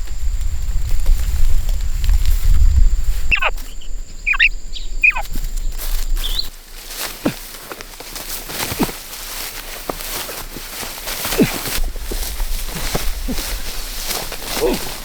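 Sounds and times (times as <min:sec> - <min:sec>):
low rumble: 0:00.0 - 0:06.5
rustling footsteps: 0:00.0 - 0:15.0
small bird sharp calls: 0:03.3 - 0:06.5.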